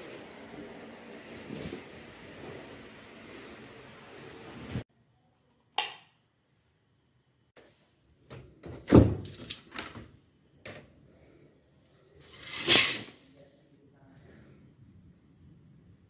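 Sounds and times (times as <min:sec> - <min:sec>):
sliding rubbing noise: 0:12.2 - 0:13.2.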